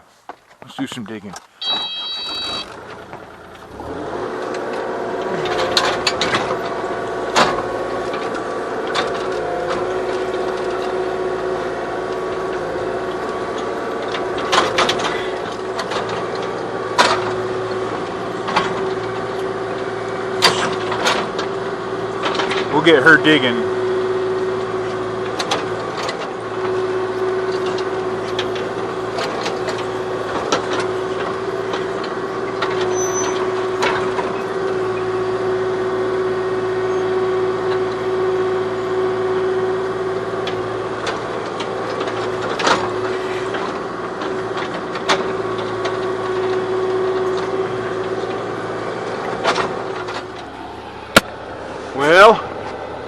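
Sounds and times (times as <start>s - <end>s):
excavator diesel engine running: 0.0s - 53.0s
high tone: 1.6s - 2.8s.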